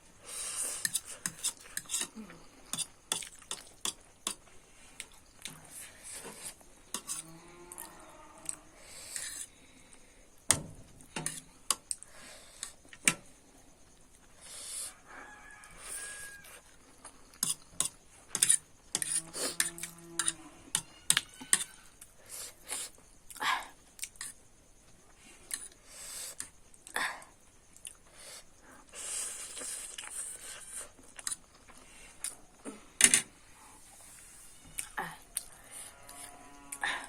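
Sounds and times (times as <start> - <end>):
cutlery clicking against a dish: 17.4 - 21.7.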